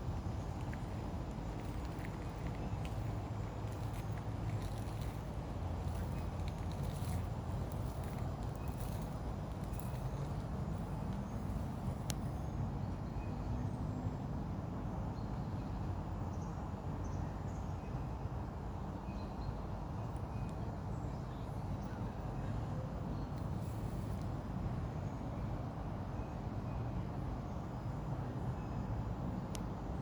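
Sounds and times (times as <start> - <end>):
steady low rumble: 0.0 - 12.5
faint click: 12.0 - 12.3, 29.5 - 29.7.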